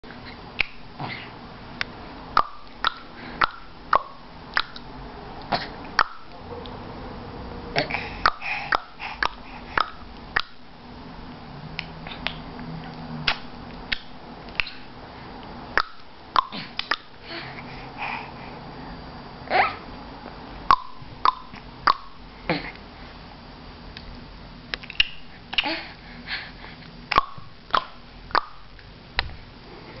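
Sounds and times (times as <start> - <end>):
baby tongue clicks: 2.4 - 6.8, 8.2 - 10.6, 27.1 - 28.5.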